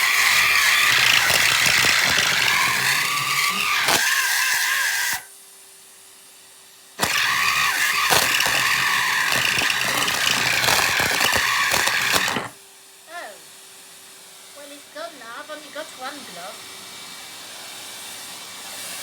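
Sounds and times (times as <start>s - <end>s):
vacuum cleaner motor hum: 0.0s - 4.1s, 7.0s - 12.5s
vacuum hose flapping and squealing: 0.0s - 4.1s, 7.0s - 12.5s.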